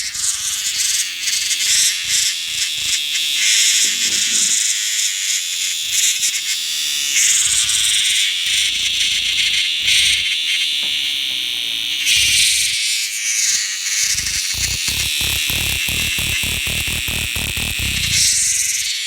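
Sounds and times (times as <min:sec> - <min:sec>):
low pulses: 0:14.1 - 0:18.6.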